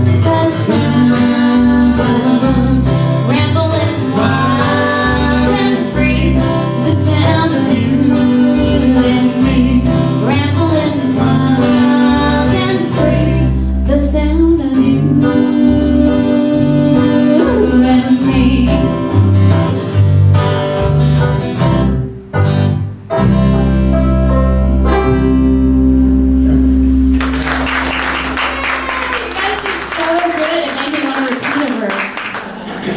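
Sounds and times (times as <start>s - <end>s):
woman singing: 0.0s - 19.0s
banjo plucking: 0.0s - 27.2s
bass line: 0.0s - 30.3s.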